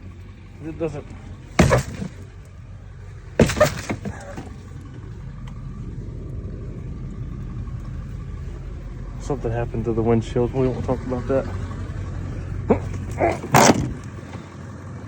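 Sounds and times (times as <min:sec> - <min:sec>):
truck door slamming with rattle: 0:00.0 - 0:05.7, 0:09.4 - 0:14.5
low steady rumble: 0:00.0 - 0:15.0.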